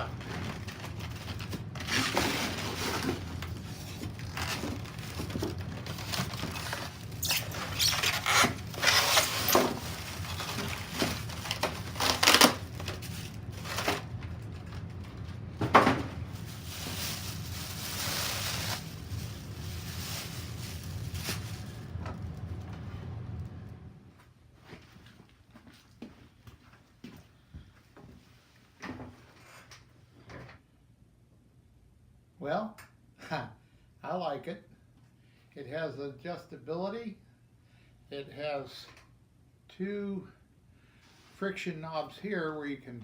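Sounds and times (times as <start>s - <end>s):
packaging rustling and crinkling: 0.0s - 15.4s, 16.2s - 22.5s
low steady hum: 0.0s - 25.5s.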